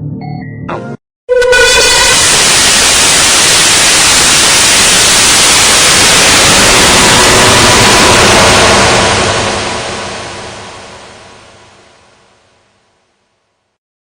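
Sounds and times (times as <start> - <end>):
loud static hiss: 1.8 - 12.4.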